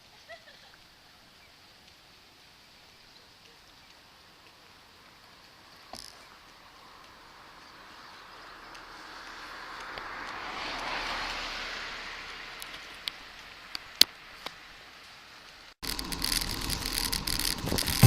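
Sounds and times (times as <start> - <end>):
vehicle passing with road hiss: 4.0 - 18.0
loud rattling noise: 15.8 - 18.0
sharp ticks: 15.8 - 18.0.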